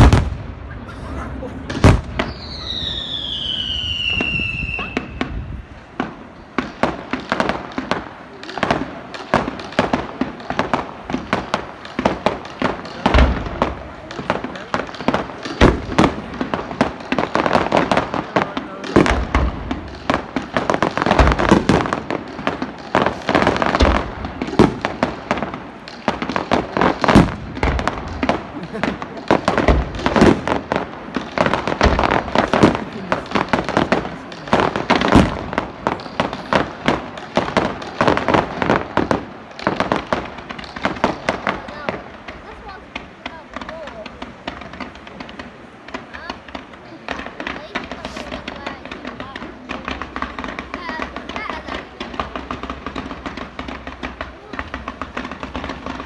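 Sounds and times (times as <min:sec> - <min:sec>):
firework cracks and bangs: 0:00.0 - 0:56.0
whistling firework shrieking: 0:01.9 - 0:05.5.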